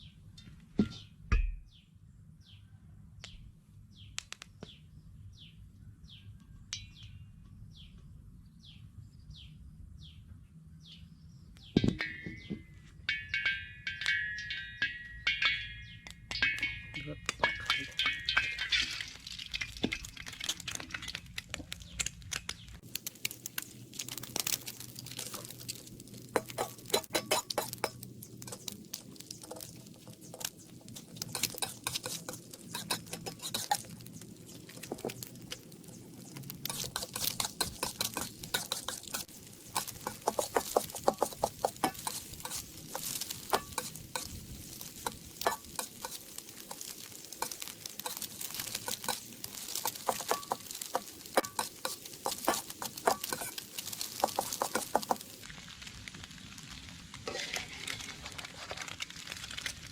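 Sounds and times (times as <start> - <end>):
eggs sizzling in oil: 13.2 - 59.9
metal spatula scraping a pan: 24.4 - 55.4, 57.2 - 58.3.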